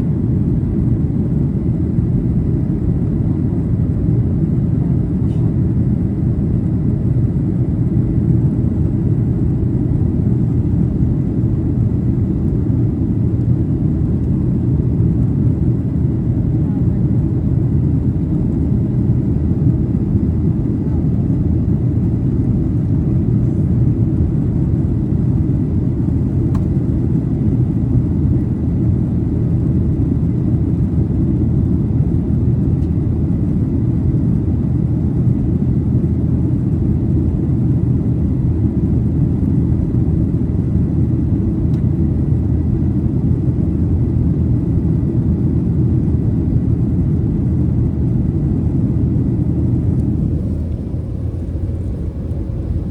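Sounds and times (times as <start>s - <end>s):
airplane cabin engine rumble: 0.0s - 52.9s.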